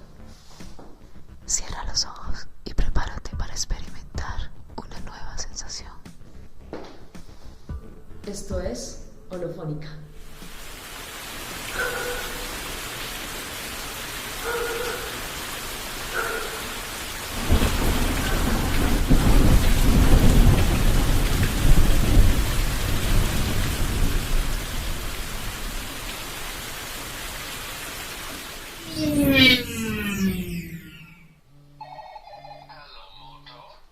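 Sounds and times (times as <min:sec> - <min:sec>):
steady rain falling: 0:10.2 - 0:30.8
thunder rolling: 0:17.2 - 0:26.1.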